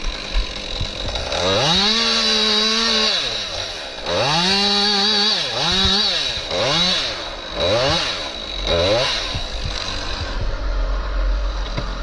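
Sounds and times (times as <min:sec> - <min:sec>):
chainsaw engine revving: 0:00.0 - 0:12.0.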